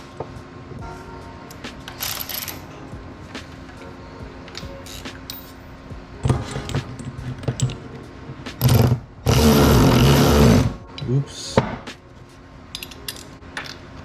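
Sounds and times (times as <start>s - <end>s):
metal hardware clinking: 6.2s - 8.0s, 12.7s - 13.9s
power tool motor running: 8.6s - 10.8s.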